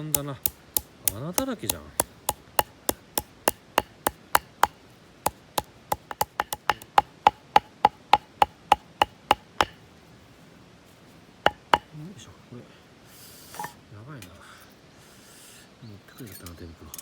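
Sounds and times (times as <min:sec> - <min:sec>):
tool striking with ringing knock: 0:00.1 - 0:09.8, 0:11.5 - 0:11.9.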